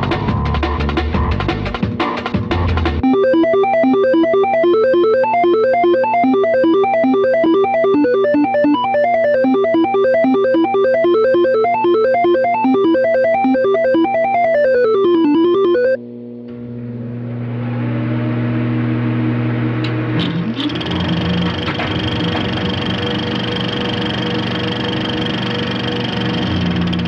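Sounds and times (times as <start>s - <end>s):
drums: 0.0s - 15.9s
synthesizer arpeggio: 3.0s - 16.0s.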